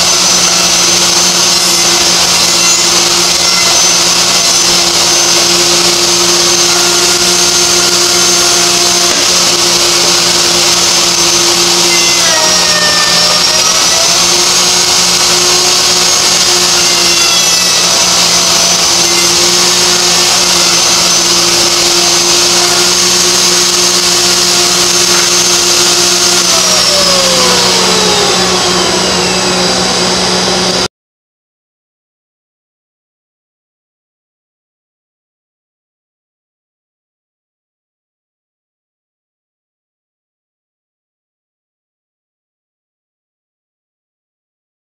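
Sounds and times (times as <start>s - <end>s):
dust collector motor: 0.0s - 30.9s
wood router running: 0.0s - 30.9s.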